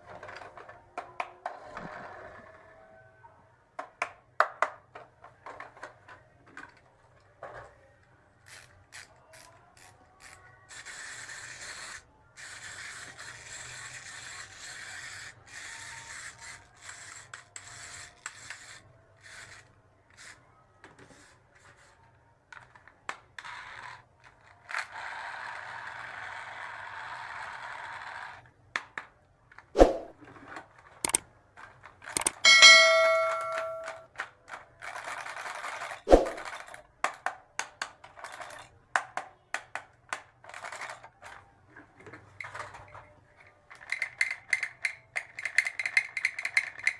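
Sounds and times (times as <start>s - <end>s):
small clicks and taps: 31.0s - 31.2s, 32.2s - 32.4s
short ringing ding: 32.4s - 34.0s
plastic toy pieces rustling: 42.1s - 46.9s.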